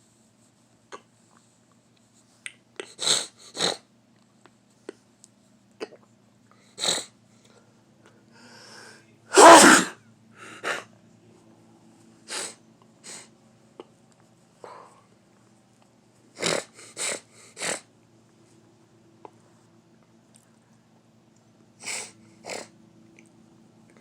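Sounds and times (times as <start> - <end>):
loud sneeze: 9.3 - 10.0
sniffs and breaths: 12.2 - 13.3, 14.6 - 15.1, 16.3 - 17.9.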